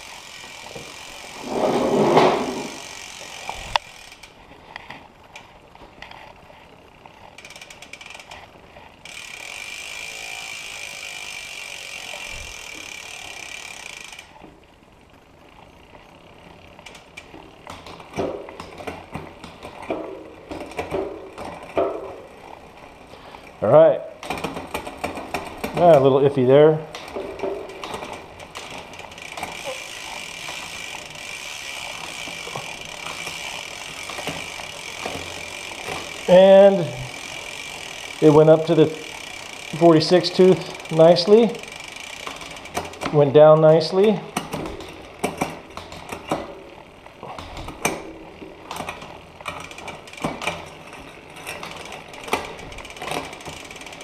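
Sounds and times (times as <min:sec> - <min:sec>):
bike chain whirring: 0:00.0 - 0:54.0
chain shifting clicks: 0:24.2 - 0:54.0.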